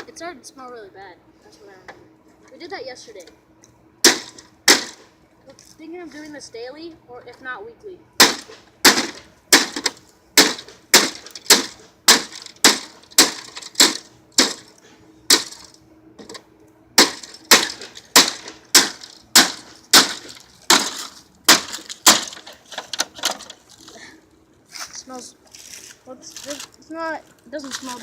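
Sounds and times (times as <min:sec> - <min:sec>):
blows smashing air conditioner: 0:04.0 - 0:05.1, 0:08.2 - 0:15.8, 0:17.0 - 0:24.1.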